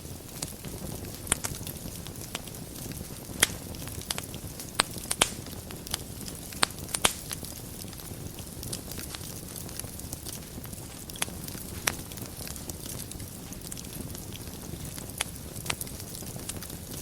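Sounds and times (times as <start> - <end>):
fire crackles and pops: 0.0 - 17.0
wood fire burning: 0.0 - 17.0.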